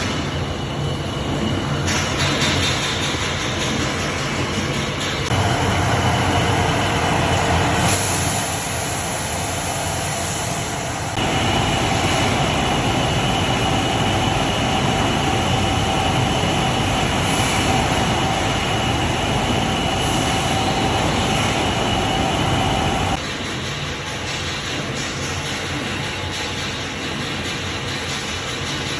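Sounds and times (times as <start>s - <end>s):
glass-cutting machine running: 5.3s - 23.2s
two-tone motor whine: 5.3s - 23.2s.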